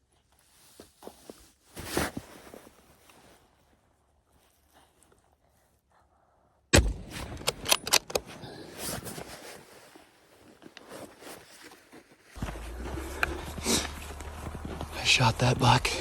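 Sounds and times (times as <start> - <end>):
rustling: 0.2 - 5.8, 7.1 - 16.0
rifle shot: 6.8 - 8.0
sharp clicks: 7.3 - 8.2.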